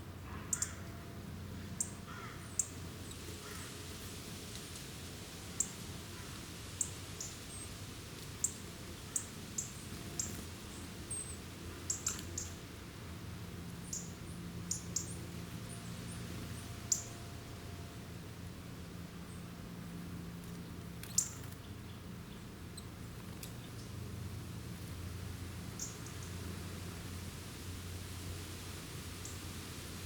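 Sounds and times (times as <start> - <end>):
small birds chipping: 0.4 - 0.9, 1.6 - 12.7, 13.7 - 17.2, 20.4 - 24.0, 24.8 - 26.8, 29.2 - 29.5.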